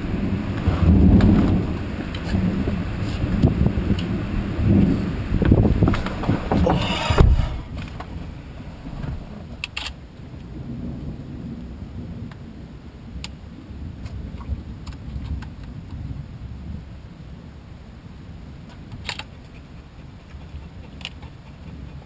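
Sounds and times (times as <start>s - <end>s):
sharp thunder crack: 0.0s - 8.3s
thunder rumbling: 0.0s - 21.0s.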